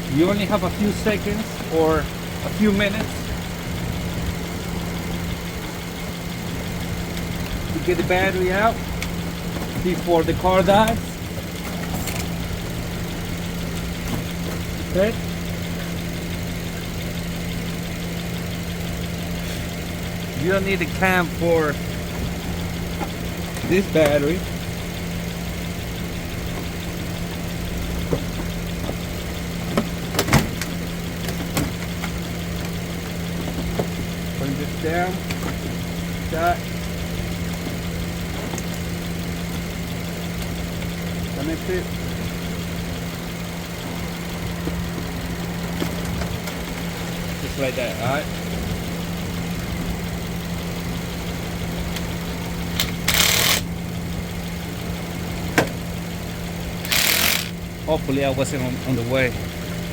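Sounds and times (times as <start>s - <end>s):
car engine idling: 0.0s - 59.9s
steady low hum: 0.0s - 59.9s.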